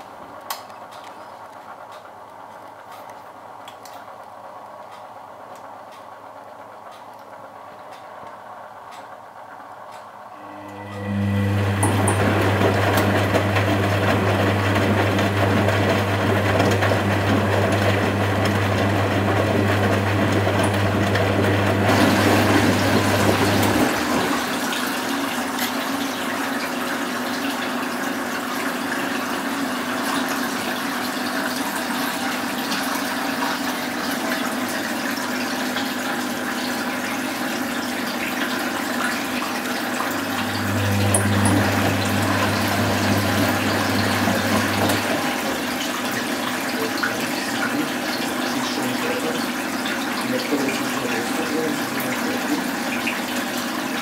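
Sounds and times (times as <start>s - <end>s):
drain pump humming: 5.6s - 54.0s
water sloshing in washing machine: 10.3s - 54.0s.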